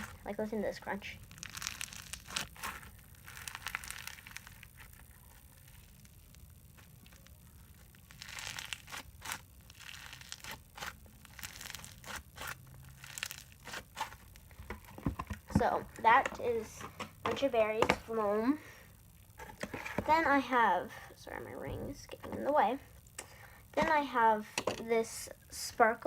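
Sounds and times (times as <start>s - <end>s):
foam slime crackling: 0.0s - 18.6s.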